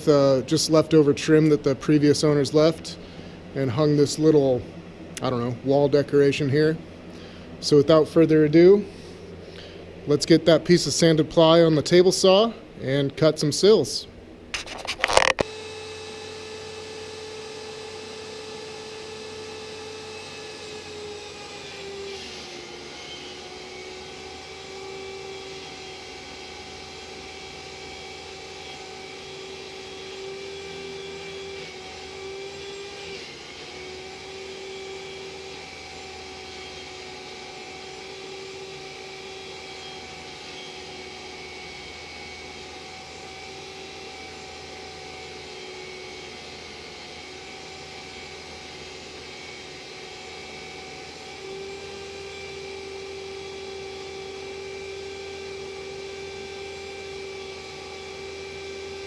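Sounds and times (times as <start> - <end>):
table saw cutting plywood: 14.6 - 59.0.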